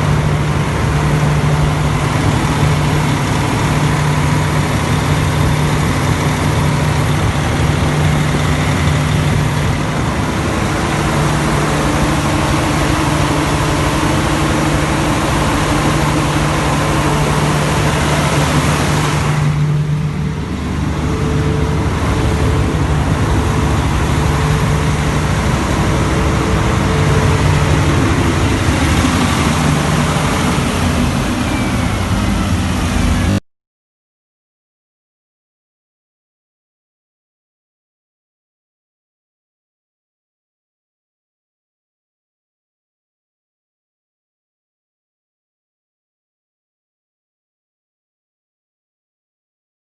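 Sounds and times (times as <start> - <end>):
diesel generator droning: 0.0 - 33.4.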